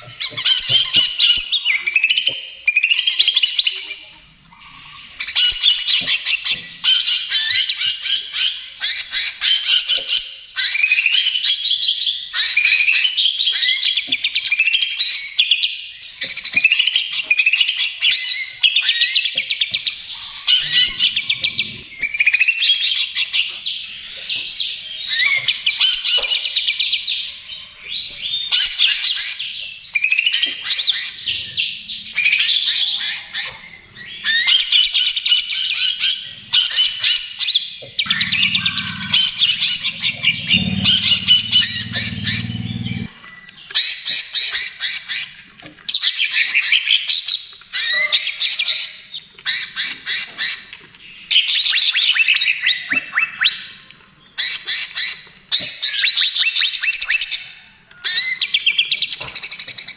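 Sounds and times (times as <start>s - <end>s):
bird singing trills and chirps: 0.0s - 37.1s, 37.8s - 44.5s.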